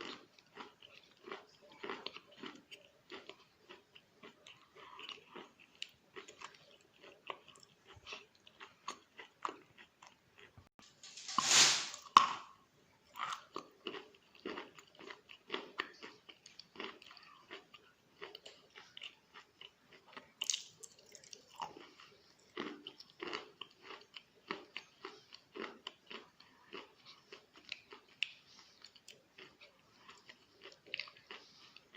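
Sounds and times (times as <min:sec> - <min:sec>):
soft crunching chews: 0:00.0 - 0:31.9
crunching bite of chalk: 0:11.0 - 0:12.3.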